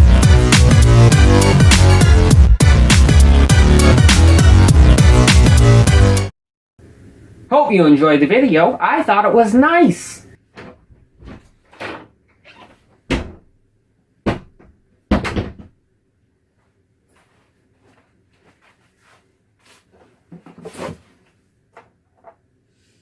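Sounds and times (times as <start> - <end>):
sharp knocks and clunks: 14.2 - 15.8.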